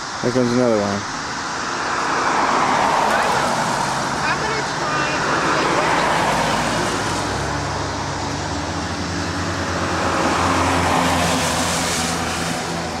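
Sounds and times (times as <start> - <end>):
water rushing: 0.0 - 13.0.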